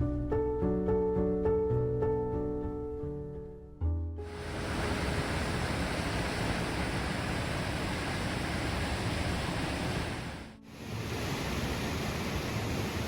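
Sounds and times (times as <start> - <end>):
waterfall rushing: 4.3 - 13.0.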